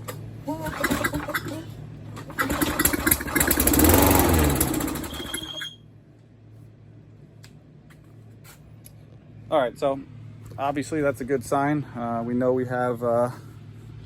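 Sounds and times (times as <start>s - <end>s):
mower engine running: 0.0s - 5.7s
mower engine pull-start: 0.0s - 5.8s.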